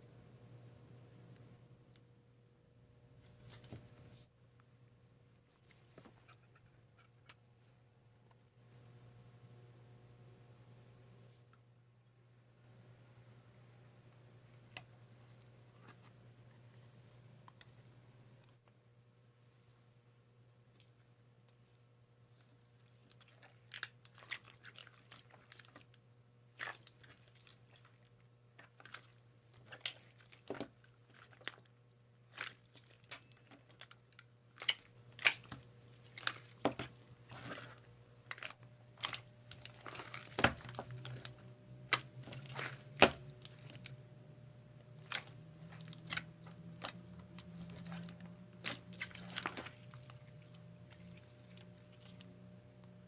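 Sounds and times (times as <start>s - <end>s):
slime crackling and popping: 32.3s - 43.9s.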